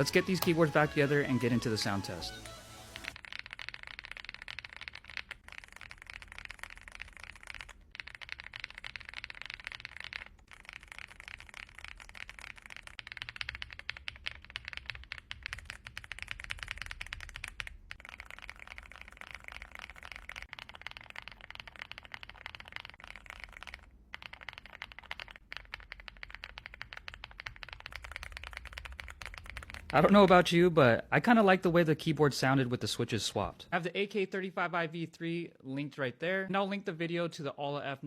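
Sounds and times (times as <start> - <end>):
rapid mechanical keyboard typing: 3.0 - 30.6.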